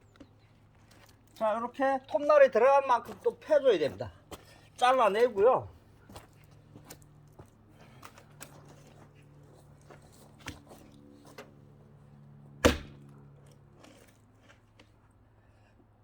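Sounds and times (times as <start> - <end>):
axe chopping log: 12.6 - 13.0.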